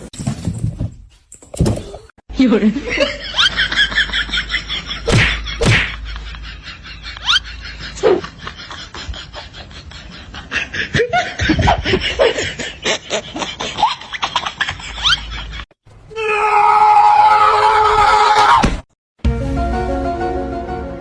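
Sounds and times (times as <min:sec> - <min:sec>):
person laughing: 0:04.9 - 0:15.6.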